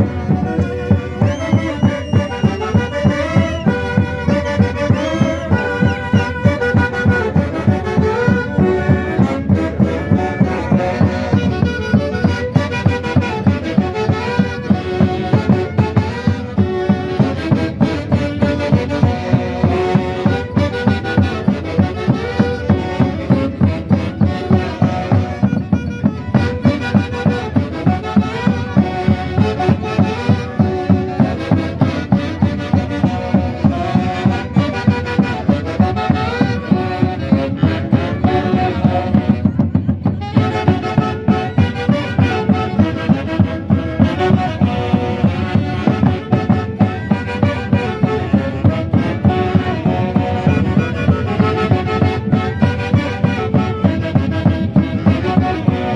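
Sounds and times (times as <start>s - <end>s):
festival band music: 0.0s - 55.9s.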